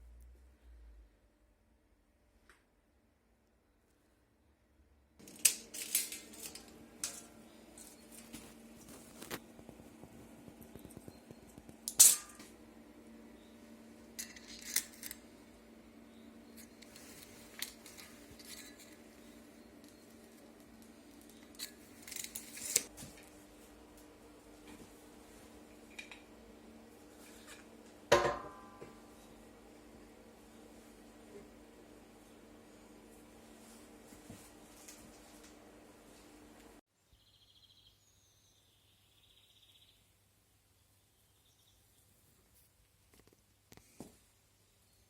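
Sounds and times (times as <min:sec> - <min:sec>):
faint steady hum: 0:00.0 - 0:45.0.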